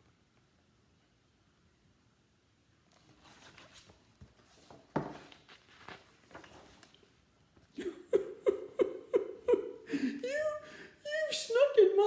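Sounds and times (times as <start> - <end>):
paper page rustling: 3.0 - 7.2.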